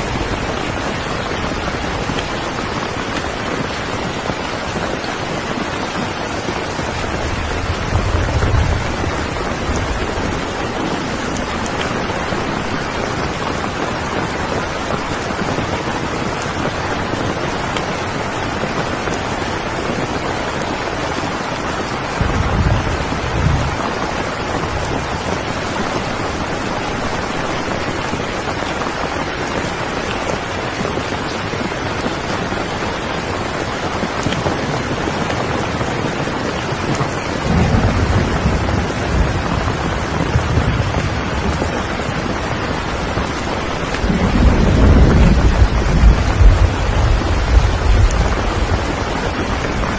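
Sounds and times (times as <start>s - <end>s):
heavy rain: 0.0s - 49.9s
low rolls of thunder: 5.9s - 14.5s, 22.1s - 27.3s, 36.8s - 49.9s.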